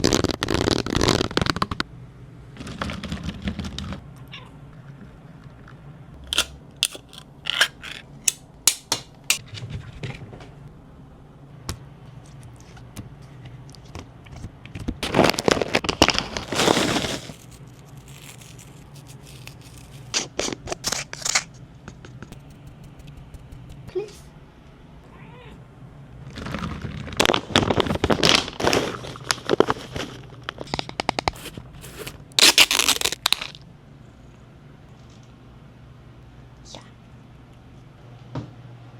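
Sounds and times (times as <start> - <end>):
rustling and scraping: 12.2 - 23.9
sharp clicks and taps: 22.1 - 23.9.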